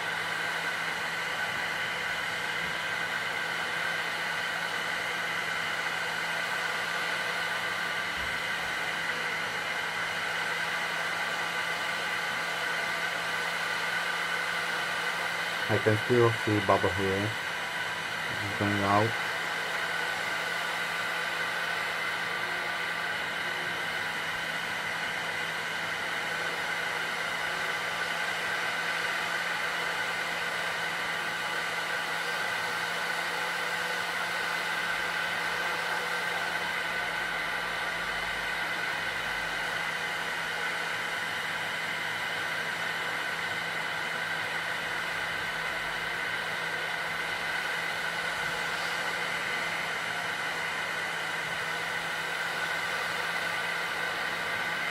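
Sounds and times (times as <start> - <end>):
heat gun blowing hot air: 33.3 - 54.9.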